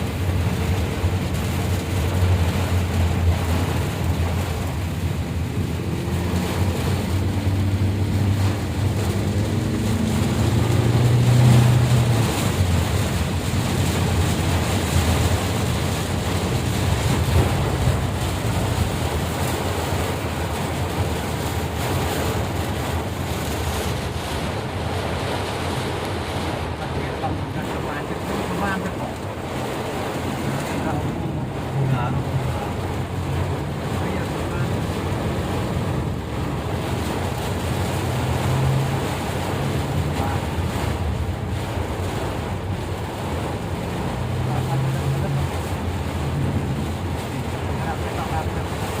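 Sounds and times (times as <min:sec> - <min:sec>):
heavy rain: 0:00.0 - 0:49.0.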